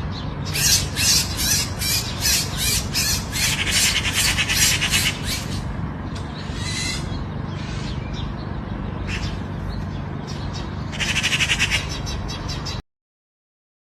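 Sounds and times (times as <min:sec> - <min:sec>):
bird chattering calls: 0:00.4 - 0:08.4, 0:09.0 - 0:09.5, 0:10.3 - 0:12.8.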